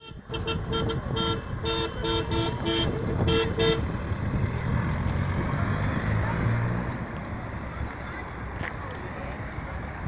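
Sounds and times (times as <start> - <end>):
vehicle horn short toots: 0.0 - 3.8
low rumble of engines: 0.0 - 10.0.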